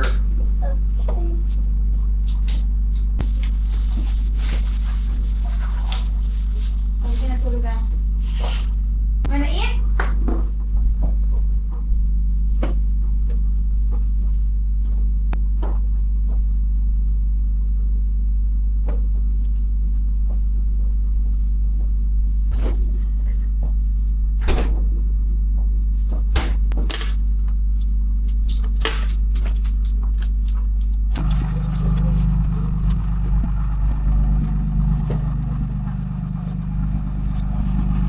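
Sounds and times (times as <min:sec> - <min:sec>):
car engine drone inside cabin: 0:31.2 - 0:38.0.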